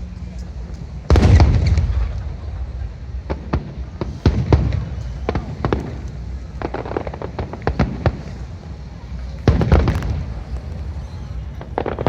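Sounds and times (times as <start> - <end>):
low rumble: 0.0 - 11.8
fireworks crackling pops: 0.1 - 12.0.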